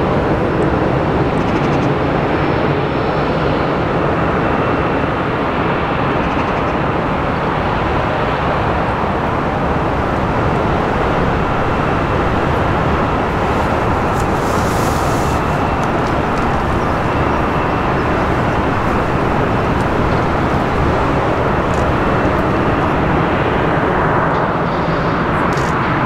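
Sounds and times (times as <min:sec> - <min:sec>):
jet engines rumbling: 0:00.0 - 0:26.0
faint high whine: 0:05.8 - 0:26.0.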